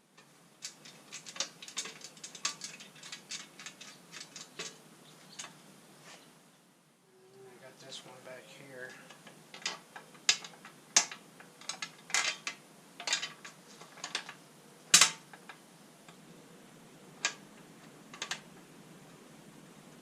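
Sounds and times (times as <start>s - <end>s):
bolts and parts clicking: 0.2s - 5.6s, 9.1s - 16.2s.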